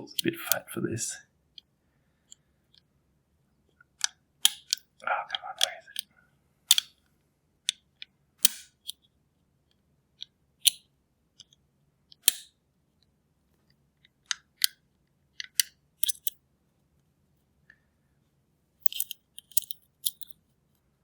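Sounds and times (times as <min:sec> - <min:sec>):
metal pick clicking in lock: 0:04.0 - 0:04.8, 0:06.7 - 0:07.0, 0:10.6 - 0:10.8, 0:12.2 - 0:12.5, 0:15.4 - 0:16.4, 0:18.8 - 0:20.4.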